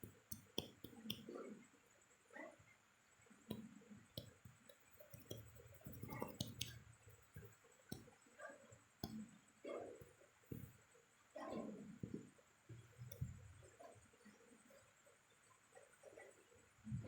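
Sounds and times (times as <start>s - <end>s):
faint clicks: 4.2s - 8.1s.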